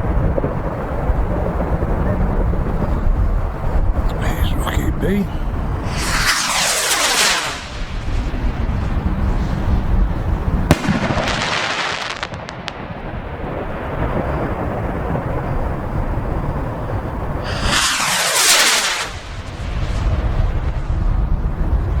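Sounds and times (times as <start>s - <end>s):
hiss and crackling pops: 4.0s - 9.9s, 17.4s - 20.8s
firework rocket launch whoosh: 4.1s - 12.9s, 17.3s - 21.5s
firework shell bang: 10.7s - 12.4s
steady low rumble: 17.1s - 22.0s.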